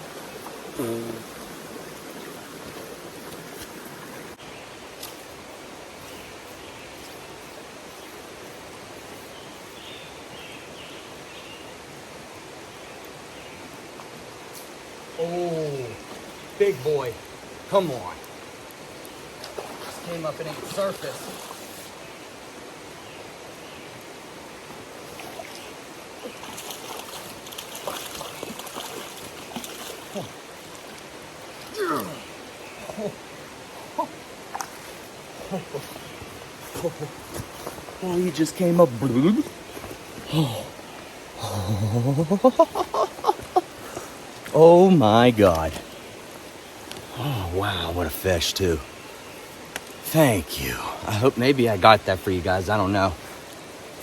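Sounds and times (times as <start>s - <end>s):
creek water running: 0.0s - 54.0s
stream rushing: 0.0s - 54.0s
small splashes and clicks: 26.3s - 32.2s, 34.5s - 35.0s.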